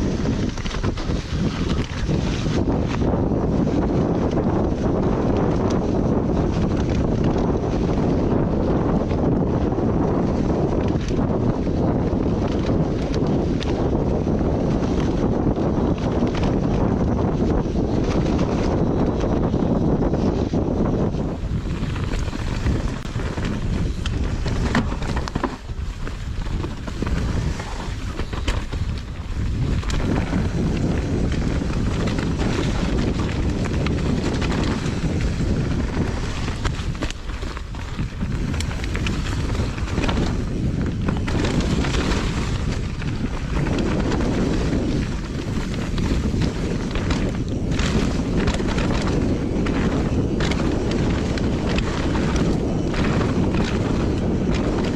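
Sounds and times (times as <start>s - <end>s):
bike rattles and knocks: 0.0s - 54.9s
wind rushing over microphone: 0.0s - 54.9s
tyre rumble on dirt: 20.6s - 54.9s.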